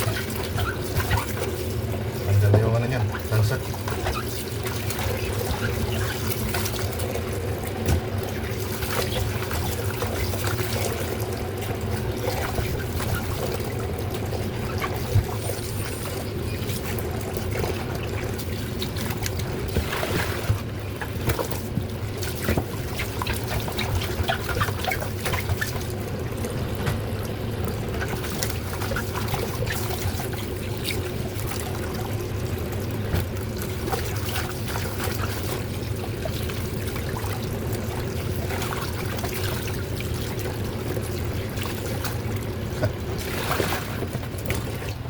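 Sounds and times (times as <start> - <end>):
small water splashes: 0.0 - 45.0
water trickling and pouring: 0.0 - 45.0
steady low hum: 1.3 - 30.6.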